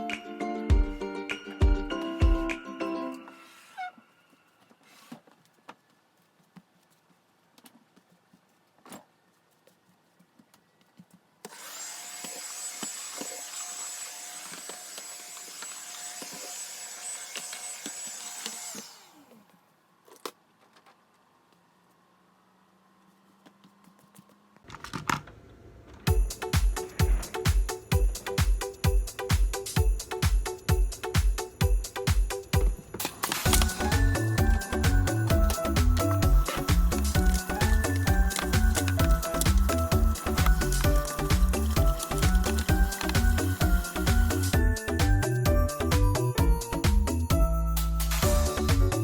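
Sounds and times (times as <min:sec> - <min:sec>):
vacuum cleaner motor whine: 0:11.5 - 0:19.5.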